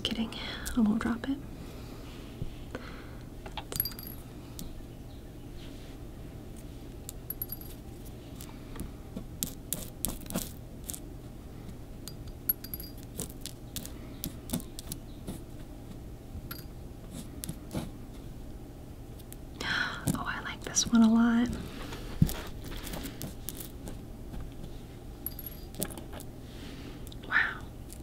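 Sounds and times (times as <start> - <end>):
shark teeth clinking in a jar: 3.7 - 4.2, 7.2 - 7.9, 12.1 - 13.6, 25.2 - 26.0.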